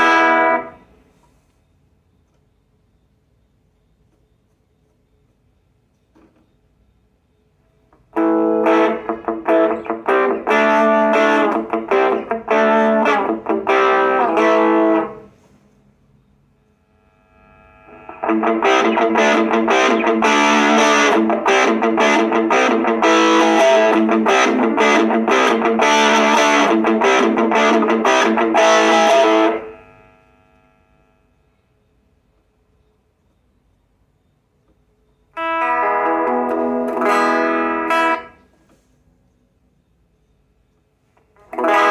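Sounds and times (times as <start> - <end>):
distorted electric guitar: 0.0 - 0.8, 8.1 - 15.3, 17.0 - 31.2, 35.4 - 38.4, 41.4 - 41.9.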